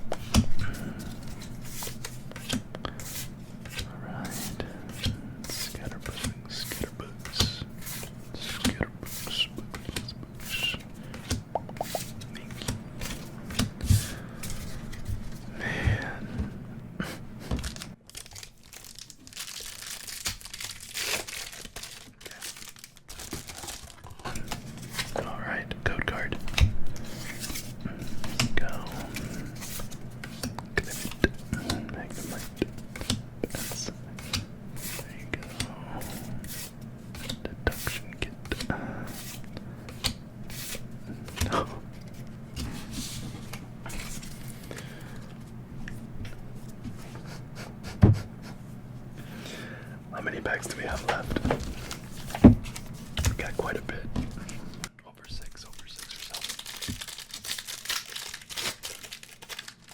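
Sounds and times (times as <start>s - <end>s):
trading cards rustling: 0.1s - 15.5s, 17.4s - 45.5s, 50.5s - 59.9s
foil wrapper crinkling: 17.6s - 25.2s, 55.4s - 59.9s.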